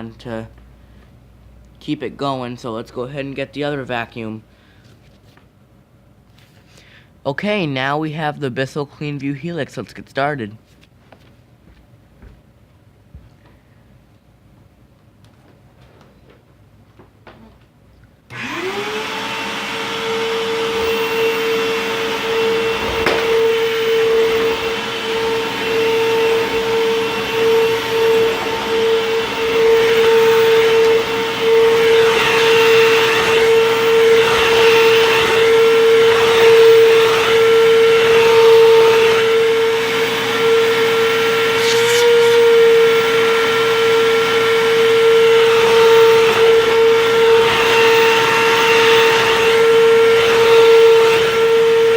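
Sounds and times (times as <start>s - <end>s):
vacuum cleaner whining: 18.3s - 51.9s.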